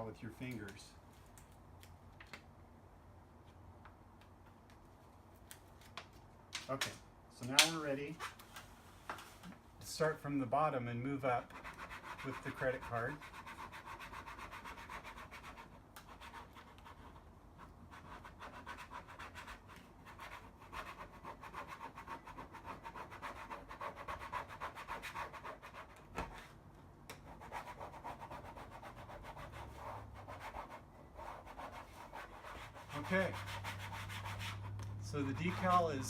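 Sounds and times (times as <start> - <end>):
plastic card scratching over paper: 31.4 - 36.0.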